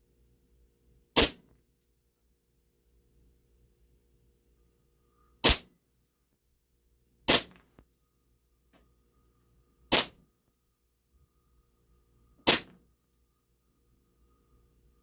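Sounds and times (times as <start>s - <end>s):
airsoft pistol shots: 1.2s - 1.4s, 5.4s - 5.7s, 7.3s - 7.6s, 9.9s - 10.2s, 12.5s - 12.8s.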